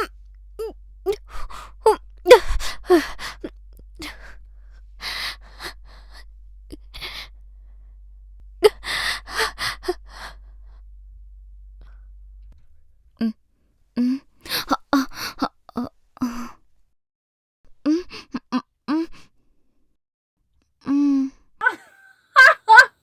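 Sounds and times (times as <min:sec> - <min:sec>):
woman laughing: 0:21.6 - 0:23.0.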